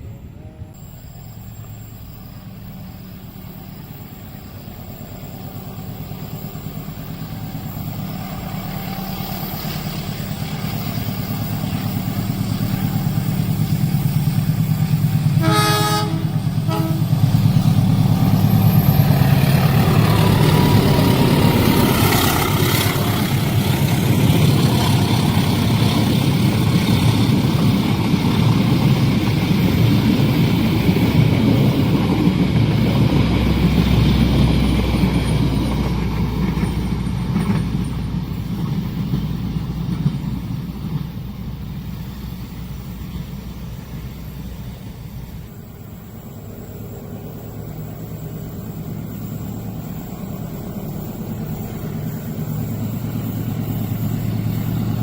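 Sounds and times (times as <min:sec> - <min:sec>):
diesel train engine rumble: 0:00.0 - 0:55.0
train wheels rumbling on rails: 0:00.0 - 0:55.0
train horn: 0:15.3 - 0:17.5.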